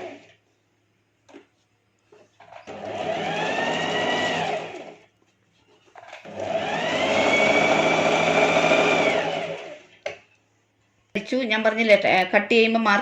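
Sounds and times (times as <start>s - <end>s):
sewing machine stitching: 2.4s - 5.0s, 6.0s - 10.0s.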